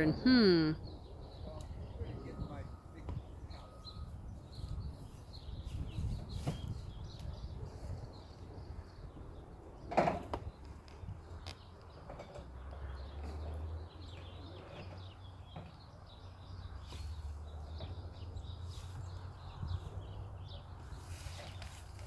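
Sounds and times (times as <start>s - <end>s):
faint bird chirps: 0.3s - 7.9s.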